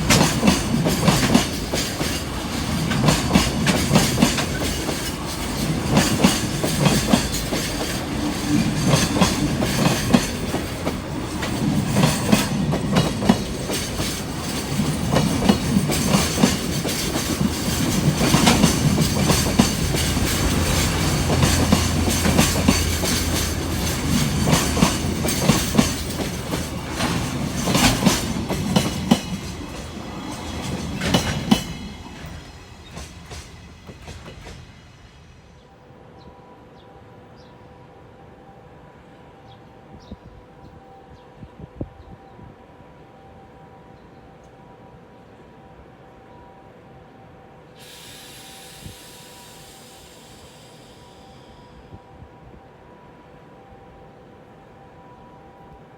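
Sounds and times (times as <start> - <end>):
train wheels clacking on rail joints: 0.0 - 34.7
train rumble: 0.0 - 36.0, 47.8 - 55.8.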